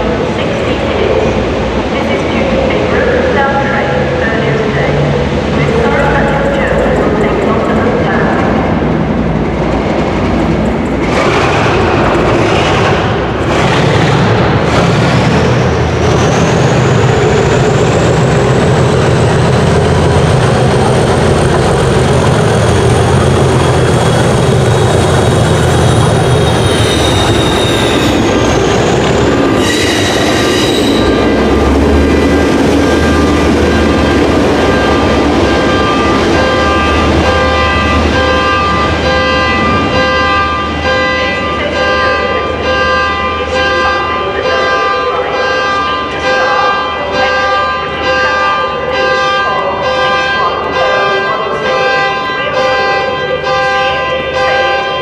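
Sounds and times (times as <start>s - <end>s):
diesel locomotives accelerating: 0.0s - 55.0s
turbocharger whistle: 26.3s - 28.3s, 29.6s - 31.1s.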